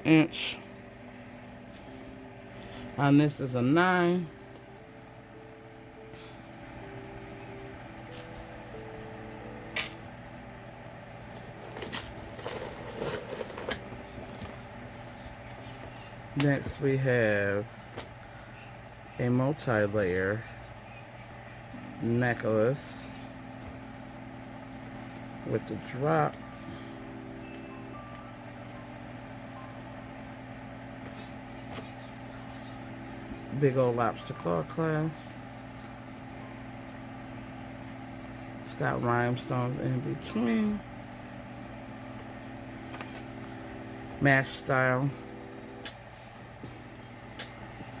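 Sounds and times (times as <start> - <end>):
steady low hum: 0.0 - 48.0
jewellery clicking and rattling: 4.4 - 5.7.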